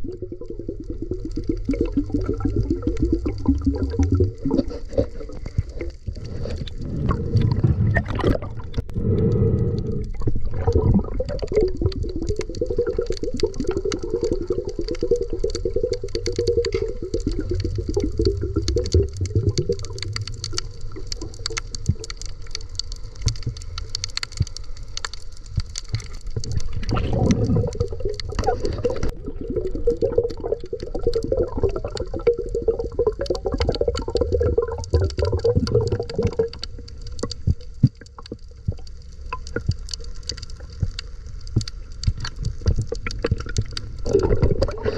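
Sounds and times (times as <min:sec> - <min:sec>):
water gurgling and bubbling: 0:00.0 - 0:22.4, 0:26.0 - 0:41.0, 0:42.1 - 0:44.9
dense small clicks: 0:00.0 - 0:44.9
low rumble: 0:06.1 - 0:11.3.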